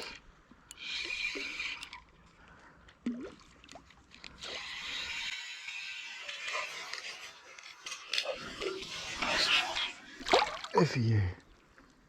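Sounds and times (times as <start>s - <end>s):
seawater splashing and sloshing: 10.2s - 11.0s.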